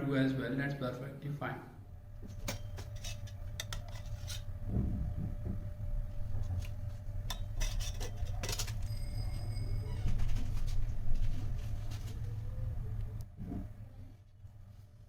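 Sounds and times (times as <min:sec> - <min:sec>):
steady low hum: 0:00.0 - 0:15.0
utensils scraping a bowl: 0:02.3 - 0:04.6, 0:06.4 - 0:09.1.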